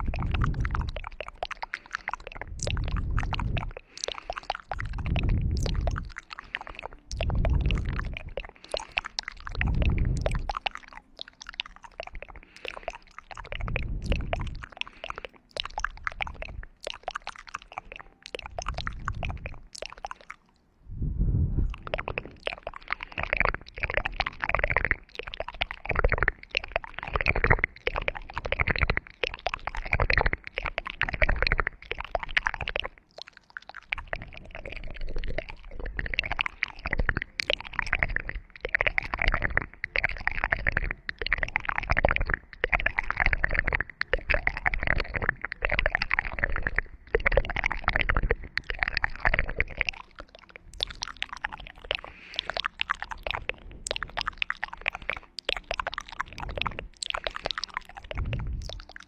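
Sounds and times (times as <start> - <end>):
low rumble: 2.5 - 3.7, 4.8 - 6.1, 9.6 - 10.5, 20.8 - 22.3, 58.1 - 58.7.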